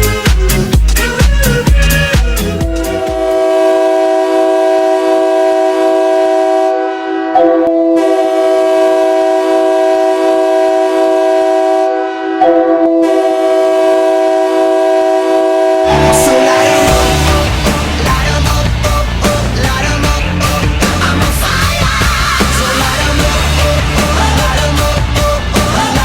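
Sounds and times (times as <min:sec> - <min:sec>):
arena music: 0:00.0 - 0:03.6, 0:15.8 - 0:26.0
goal horn blasts: 0:02.6 - 0:17.8.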